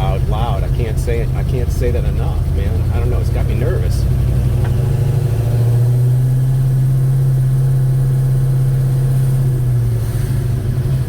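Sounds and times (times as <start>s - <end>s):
car engine droning: 0.0s - 11.0s.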